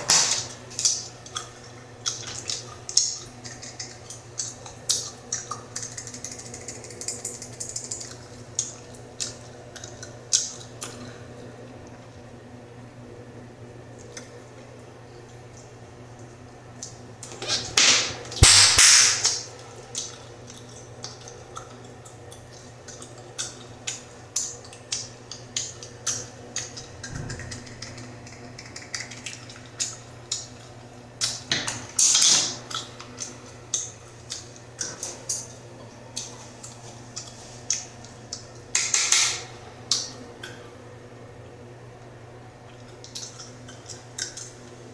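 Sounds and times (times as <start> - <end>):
bubblegum snapping and popping: 18.4 - 19.4.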